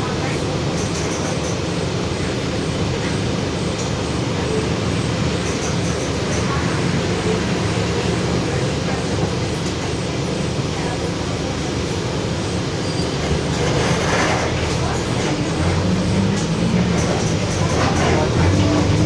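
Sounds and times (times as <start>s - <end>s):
bus engine: 0.0s - 19.0s
road noise: 0.0s - 19.0s
bus differential droning: 4.6s - 19.0s.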